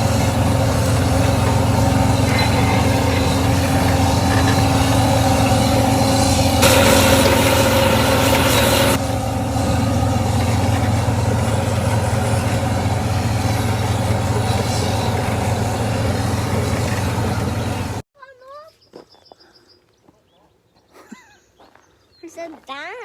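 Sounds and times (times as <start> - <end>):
heavy diesel engine droning: 0.0 - 18.0.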